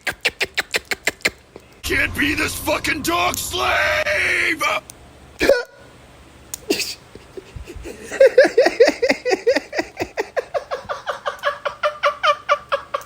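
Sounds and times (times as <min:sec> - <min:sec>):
person laughing with wheezing gasps: 0:06.7 - 0:13.0.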